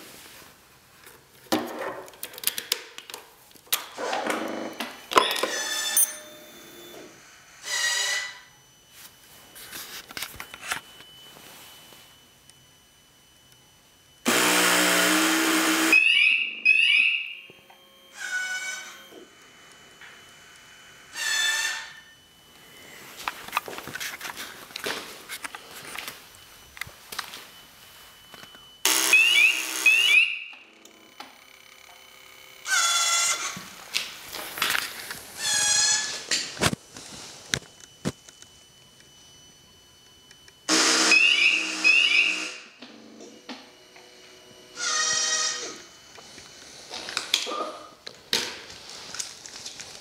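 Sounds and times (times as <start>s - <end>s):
alarm harsh buzz: 3.9s - 48.1s
alarm rising electronic chirps: 10.6s - 19.3s, 25.5s - 33.6s, 37.1s - 42.8s.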